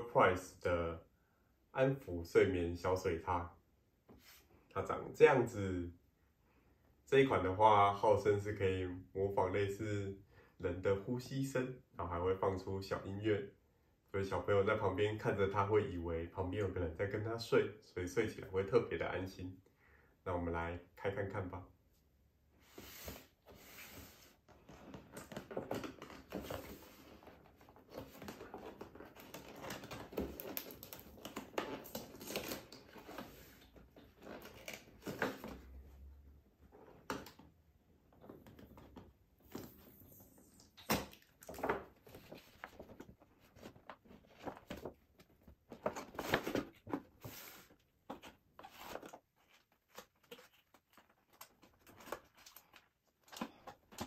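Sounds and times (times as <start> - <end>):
packaging tearing and crinkling: 28.5 - 32.9.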